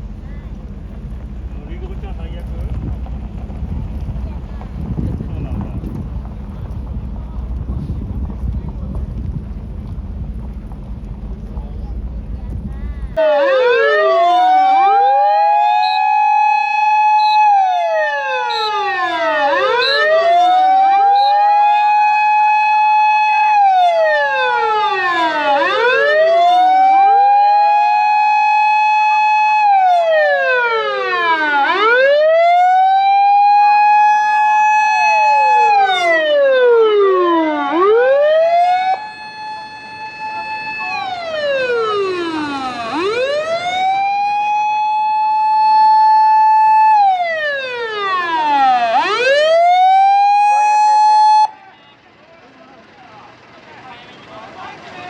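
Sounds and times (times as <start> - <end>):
fire engine sirens wailing: 13.1 - 55.0.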